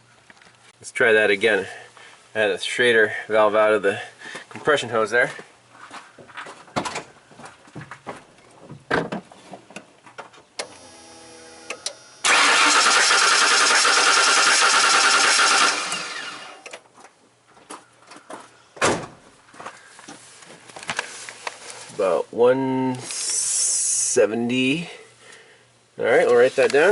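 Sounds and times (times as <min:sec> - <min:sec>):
starter cranking engine: 0:12.2 - 0:16.6.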